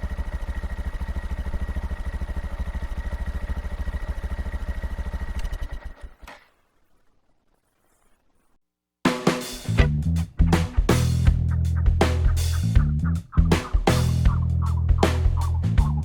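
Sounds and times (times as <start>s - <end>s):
motorcycle engine idling: 0.0s - 6.2s, 9.8s - 16.0s.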